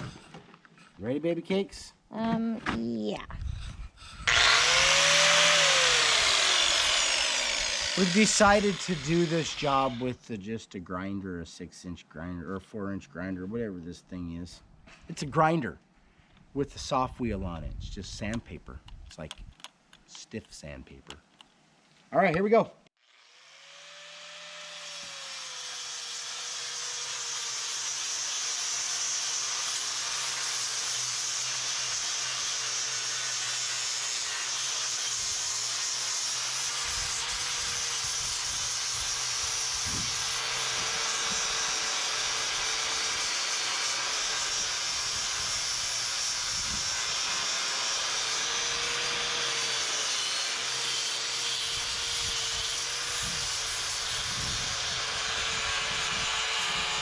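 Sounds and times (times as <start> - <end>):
angle grinder grinding concrete: 3.4 - 10.4, 23.0 - 57.0.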